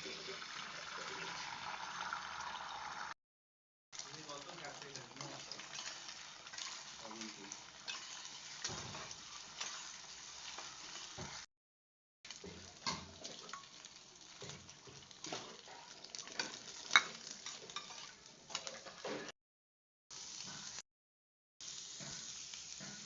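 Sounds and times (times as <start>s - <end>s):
food sizzling in a pan: 0.0s - 3.2s, 4.0s - 11.5s, 12.2s - 19.3s, 20.1s - 20.8s, 21.6s - 23.0s
spoon stirring: 5.2s - 9.9s, 15.7s - 19.0s
spoon scraping and clinking on pan: 5.5s - 11.2s, 15.2s - 19.3s.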